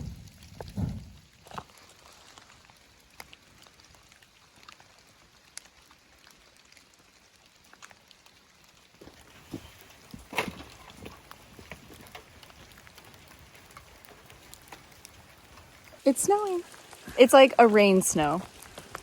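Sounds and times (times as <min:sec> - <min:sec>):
rain and wet snow falling: 0:00.0 - 0:19.0.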